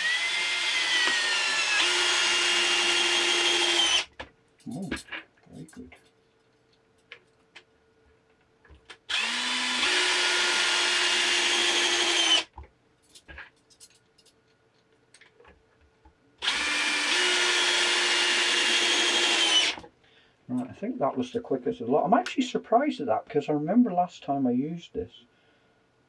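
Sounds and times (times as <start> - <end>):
cordless drill driving screws into wood: 0.0 - 4.1, 9.0 - 12.5, 16.4 - 19.8
faint knocks and handling: 4.1 - 8.9, 12.5 - 16.2.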